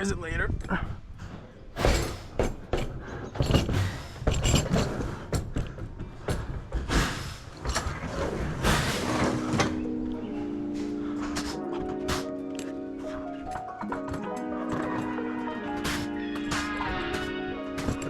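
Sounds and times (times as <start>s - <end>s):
hard objects knocking and clattering: 1.8s - 10.0s
background music: 7.9s - 18.0s.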